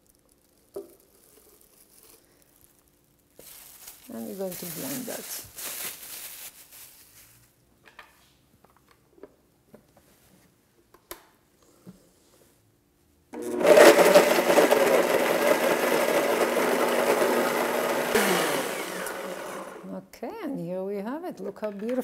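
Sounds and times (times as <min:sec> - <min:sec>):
kitchen blender running: 0:13.4 - 0:19.9.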